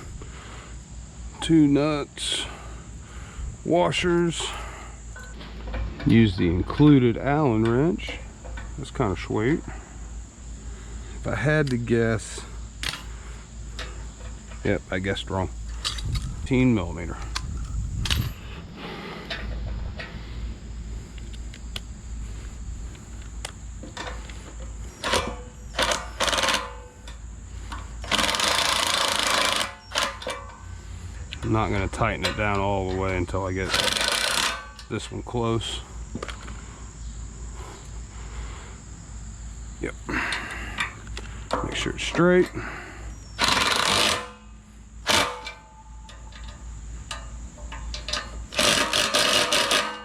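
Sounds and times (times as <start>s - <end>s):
power tool driving a bolt: 25.0s - 26.9s, 28.0s - 30.5s, 33.7s - 34.9s, 43.4s - 45.7s, 47.9s - 50.0s
ratchet clicking: 25.0s - 30.6s, 33.6s - 34.9s, 43.4s - 50.0s.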